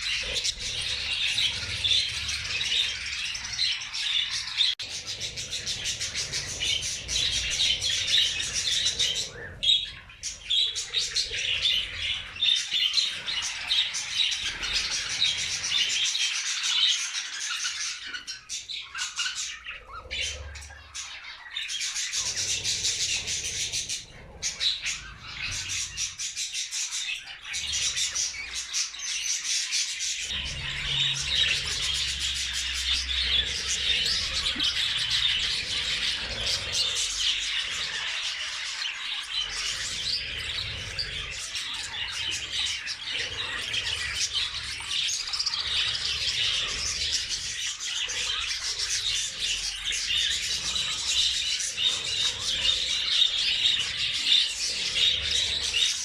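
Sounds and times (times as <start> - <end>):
budgerigars chattering and chirping: 0.0 - 56.0.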